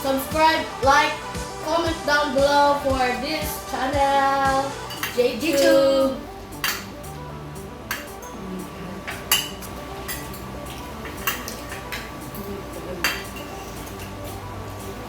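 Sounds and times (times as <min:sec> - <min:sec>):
cutlery clinking on plates: 0:04.9 - 0:05.8, 0:06.6 - 0:07.0, 0:09.1 - 0:14.2.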